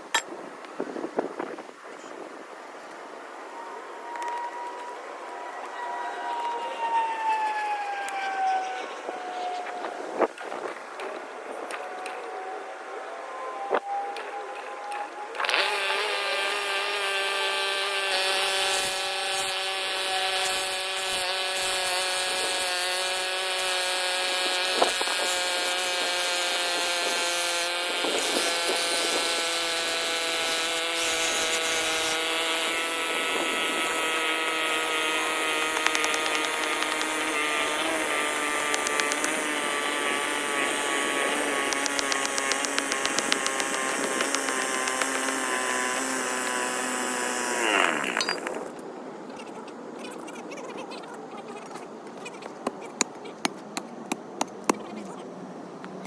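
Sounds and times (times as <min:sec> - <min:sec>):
angle grinder cutting pavement: 0:15.4 - 0:48.7
small ticks: 0:35.7 - 0:37.2, 0:38.7 - 0:39.4, 0:41.7 - 0:45.4.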